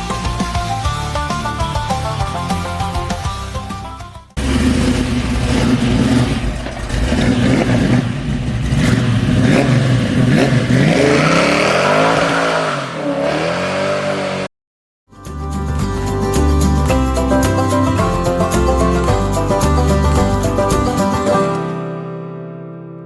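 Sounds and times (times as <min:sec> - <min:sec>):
engine revving: 0:00.0 - 0:14.5.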